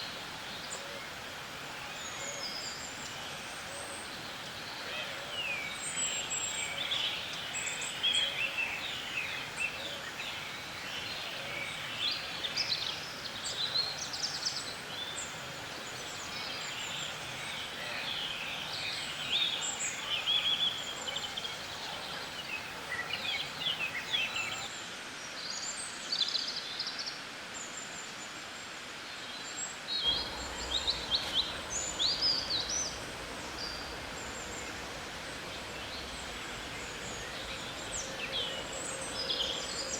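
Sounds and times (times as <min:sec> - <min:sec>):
steady background hiss: 0:00.0 - 0:39.9
songbirds chirping and singing: 0:29.8 - 0:39.9.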